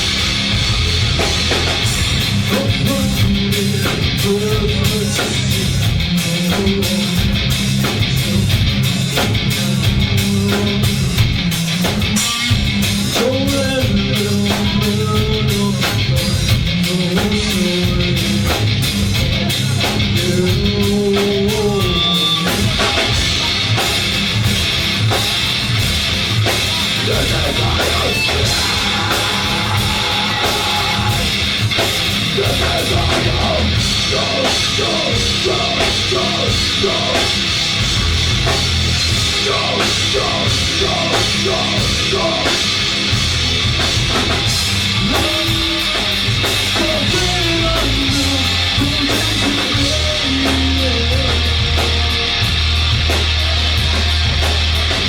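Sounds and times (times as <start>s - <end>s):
drum kit with cymbal hits: 0.0s - 55.0s
electric guitar and bass: 0.0s - 55.0s
person singing: 2.5s - 8.6s, 19.3s - 23.9s, 26.7s - 37.4s, 39.3s - 42.8s, 45.0s - 52.5s.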